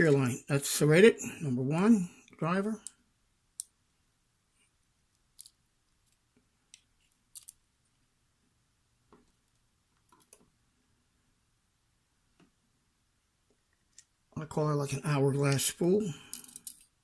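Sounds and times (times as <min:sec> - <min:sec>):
small clicks of lock pins: 0:16.3 - 0:16.9.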